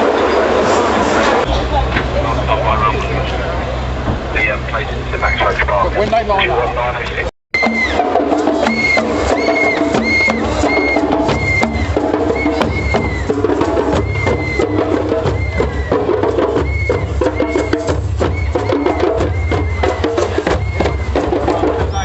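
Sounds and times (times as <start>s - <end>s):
percussion music with drums: 7.5s - 22.0s.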